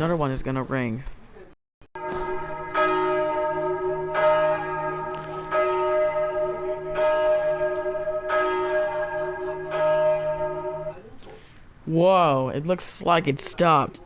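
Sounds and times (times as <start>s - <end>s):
church bell tolling: 2.0s - 11.1s.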